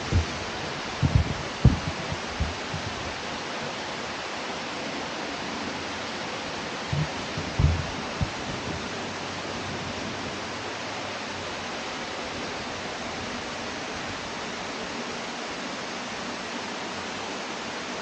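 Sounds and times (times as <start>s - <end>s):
short low thumps: 0.0s - 3.2s, 6.9s - 8.9s
waterfall rushing: 0.0s - 18.0s.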